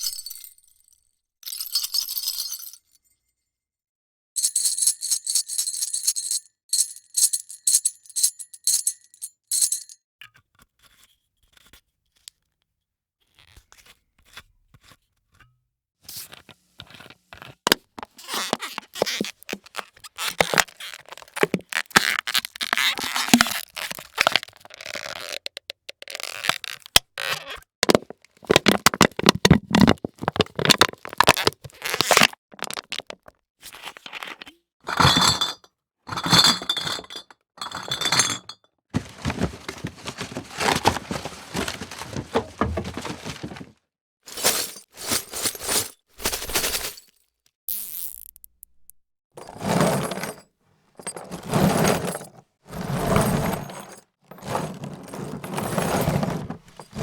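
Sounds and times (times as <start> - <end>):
cracking and crunching foley: 17.7 - 34.5, 39.0 - 43.8.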